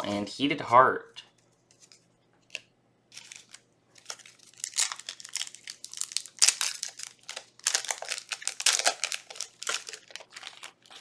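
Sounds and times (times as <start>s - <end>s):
foil wrapper crinkling: 3.1s - 11.0s.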